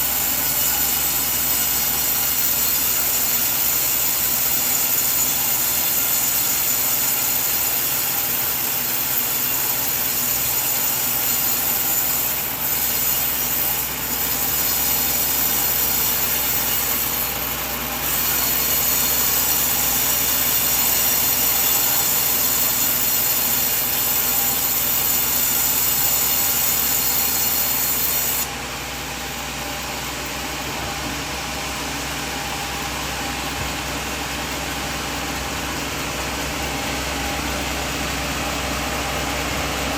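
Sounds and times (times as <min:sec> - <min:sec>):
bandsaw cutting through log: 0:00.0 - 0:39.9.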